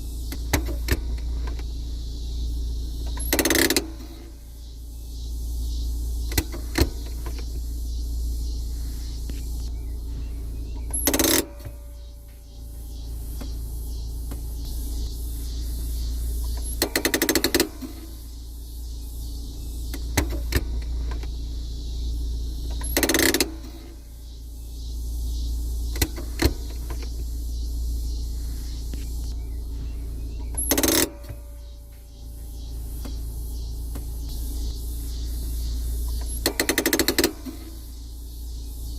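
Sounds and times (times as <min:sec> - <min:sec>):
low hum: 0:00.0 - 0:38.9
handbrake ratchet clicks: 0:00.3 - 0:01.7, 0:03.0 - 0:04.3, 0:16.4 - 0:18.1, 0:22.7 - 0:23.9, 0:30.4 - 0:31.5, 0:36.1 - 0:37.8.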